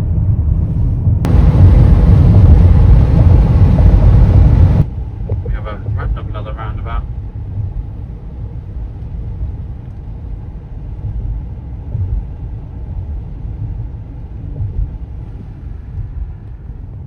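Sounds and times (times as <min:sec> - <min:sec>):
car engine and tyre rumble: 0:00.0 - 0:17.0.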